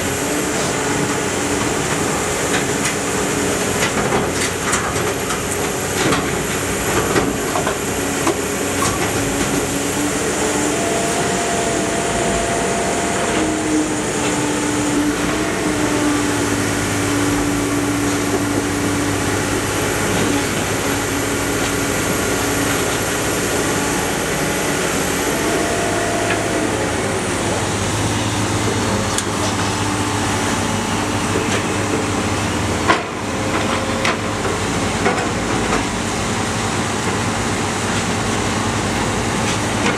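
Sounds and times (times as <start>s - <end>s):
machine whine: 0.0s - 39.9s.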